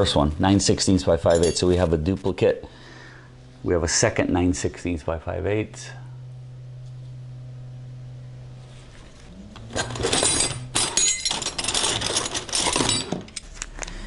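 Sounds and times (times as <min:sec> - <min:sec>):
steady low hum: 0:00.0 - 0:14.0
metal wrenches clattering: 0:01.2 - 0:01.8, 0:09.7 - 0:13.4.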